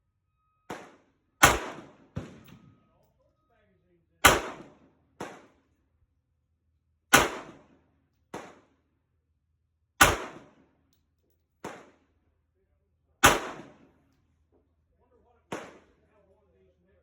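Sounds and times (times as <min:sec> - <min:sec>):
pistol shots: 0:00.7 - 0:02.7, 0:04.2 - 0:05.6, 0:07.1 - 0:07.7, 0:08.3 - 0:08.7, 0:10.0 - 0:10.6, 0:11.6 - 0:12.0, 0:13.2 - 0:13.9, 0:15.5 - 0:15.9.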